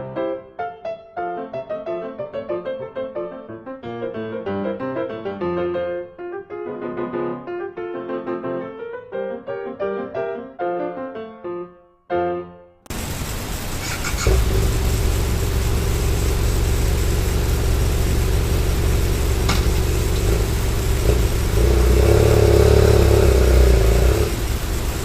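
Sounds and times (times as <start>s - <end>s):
motorcycle engine running: 12.9s - 25.0s.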